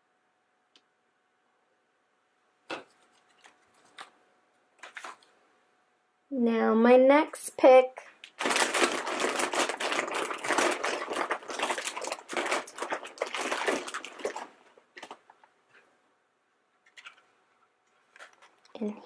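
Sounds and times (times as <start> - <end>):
plastic packets crinkling: 2.7 - 4.2, 4.8 - 5.4, 8.1 - 15.9, 16.8 - 17.3, 17.9 - 18.8.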